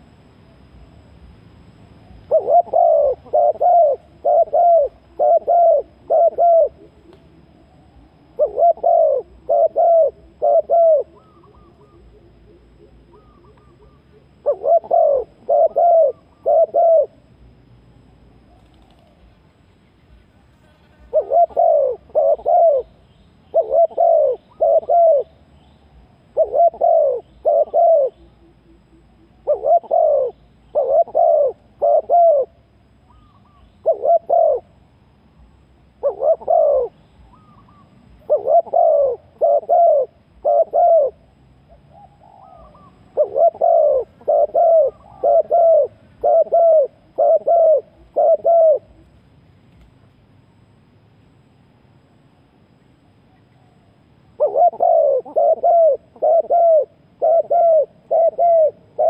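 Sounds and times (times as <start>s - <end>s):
dove cooing: 1.7s - 17.4s, 21.0s - 25.4s, 26.0s - 34.8s, 35.9s - 49.2s, 54.3s - 59.0s.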